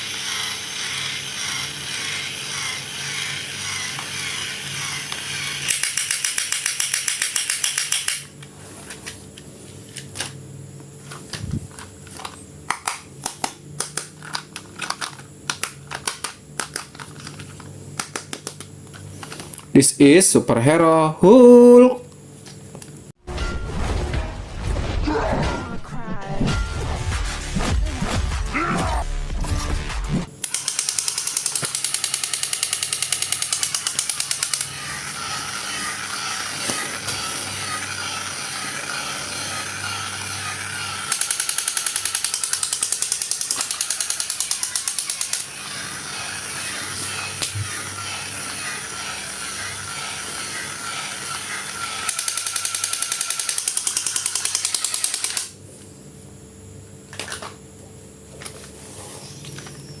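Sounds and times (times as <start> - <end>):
small motor whirring and clicking: 0.0 - 10.4, 30.4 - 55.6.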